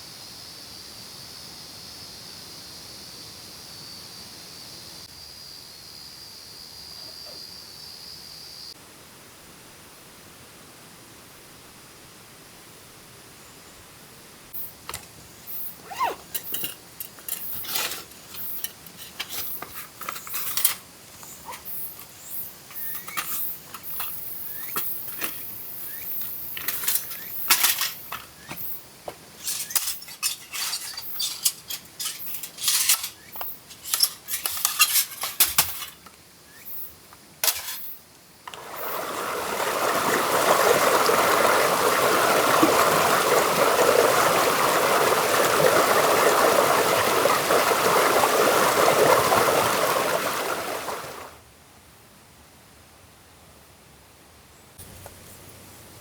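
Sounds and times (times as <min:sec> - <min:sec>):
metal cookware clinking: 0:16.3 - 0:20.8, 0:22.7 - 0:25.5, 0:26.6 - 0:28.4, 0:29.4 - 0:36.0
water pouring: 0:38.5 - 0:51.3.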